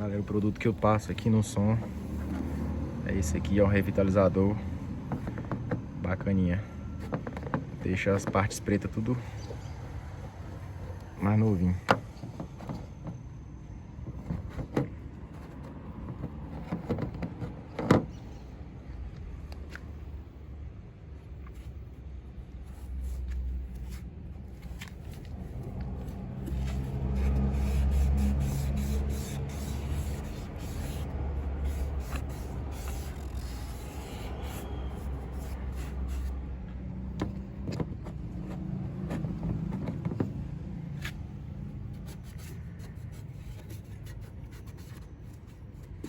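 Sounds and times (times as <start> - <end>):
low engine hum: 0.0 - 44.4
cloth rubbing plastic trim: 22.6 - 36.4.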